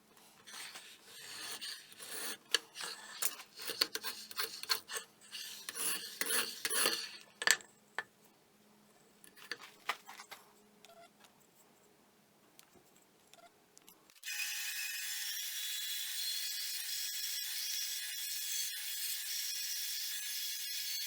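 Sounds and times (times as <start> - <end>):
tools scraping and rubbing: 0.2 - 8.1, 9.3 - 10.3.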